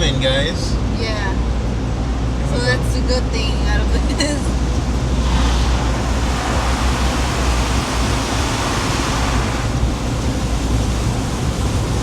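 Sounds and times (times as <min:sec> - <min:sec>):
low rumble: 0:01.4 - 0:12.0
car wash rushing: 0:02.6 - 0:12.0.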